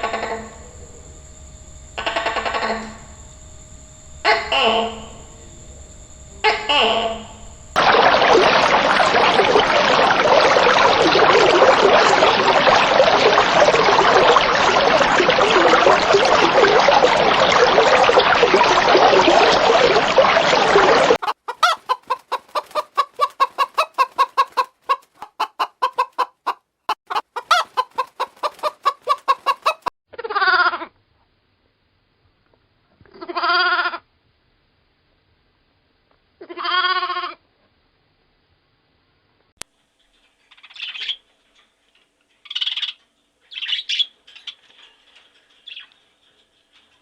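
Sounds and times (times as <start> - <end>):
chickens clucking: 0.0 - 0.6, 20.3 - 29.9
animal bleating: 33.1 - 34.0, 36.4 - 37.4.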